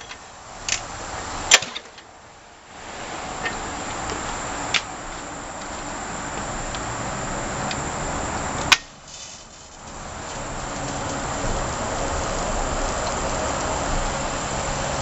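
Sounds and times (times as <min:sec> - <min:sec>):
water spray hissing: 0:02.6 - 0:15.0
pressure washer engine running: 0:09.2 - 0:15.0.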